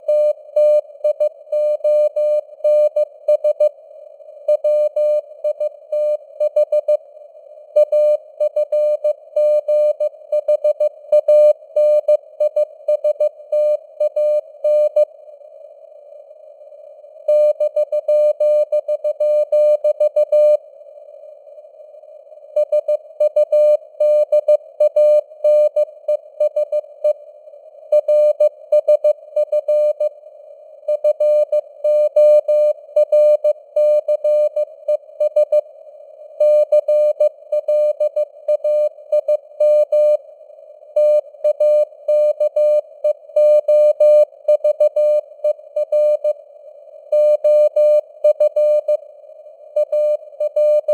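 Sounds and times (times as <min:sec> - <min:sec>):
morse code beeps: 0:49.8 - 0:50.9.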